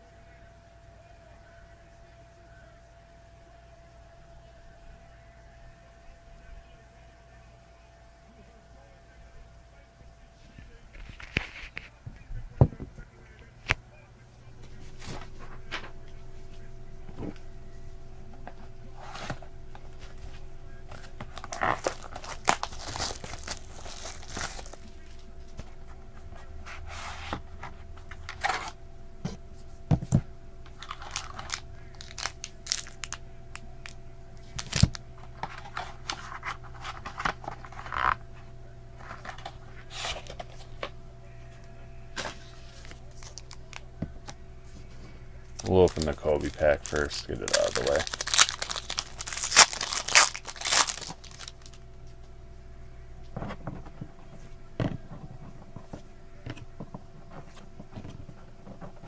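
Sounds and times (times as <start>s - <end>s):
steady low hum: 0.0s - 59.0s
cardboard handled: 18.4s - 25.2s, 26.4s - 33.2s, 42.1s - 51.8s
plastic wrapper tearing and crinkling: 20.9s - 25.2s, 30.7s - 38.2s, 42.2s - 44.4s, 45.6s - 51.8s.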